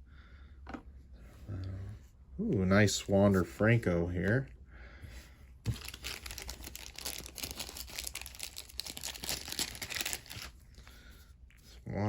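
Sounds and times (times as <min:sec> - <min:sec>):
foil wrapper crinkling and tearing: 0:05.7 - 0:10.6.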